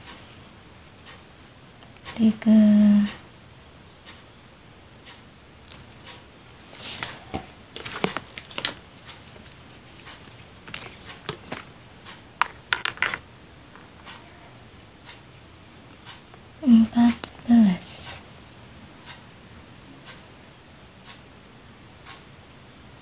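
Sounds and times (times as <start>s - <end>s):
crochet hook scratching yarn: 13.8s - 20.5s.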